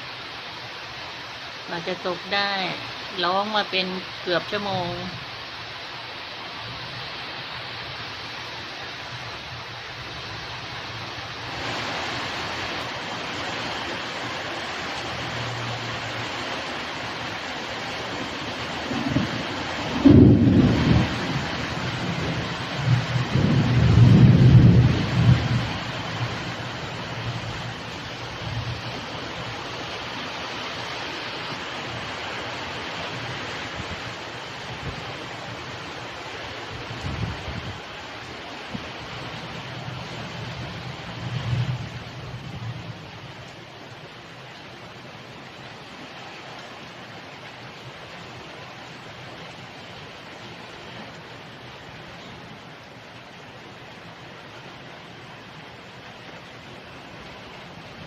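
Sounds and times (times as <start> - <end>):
heavy rain pouring: 0.0 - 58.0
low thunder rumble: 18.6 - 27.8.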